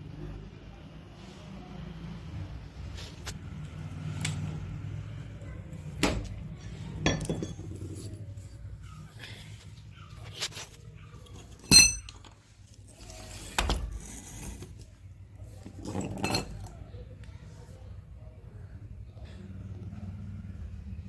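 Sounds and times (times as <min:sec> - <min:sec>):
metal tools knocking and clinking: 0:06.0 - 0:07.9, 0:11.4 - 0:12.4.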